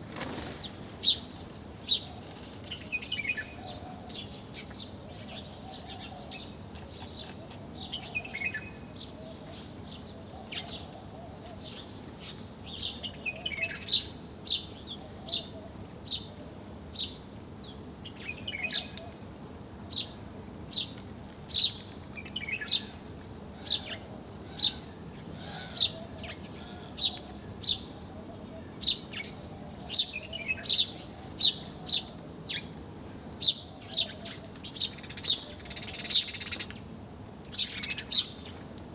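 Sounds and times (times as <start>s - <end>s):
birds chirping: 0.1s - 19.2s, 19.9s - 38.7s.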